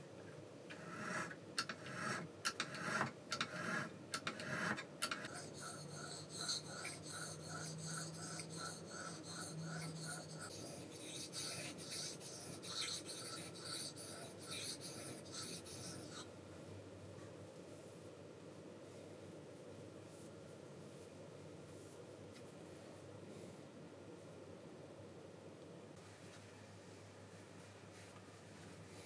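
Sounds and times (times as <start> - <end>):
knife blade rasping scrape: 0.8 - 16.3.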